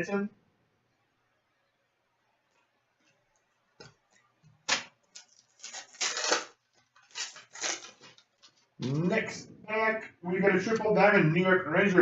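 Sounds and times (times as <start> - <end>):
card pack crinkling and rustling: 5.1 - 9.0.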